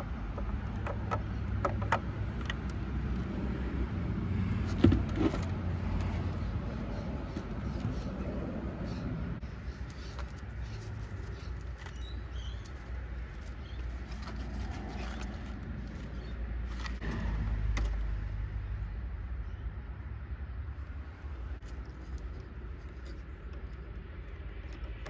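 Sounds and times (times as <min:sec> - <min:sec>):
plastic parts clicking and scraping: 0:00.0 - 0:03.3, 0:04.6 - 0:08.2, 0:09.5 - 0:17.2, 0:21.6 - 0:25.0.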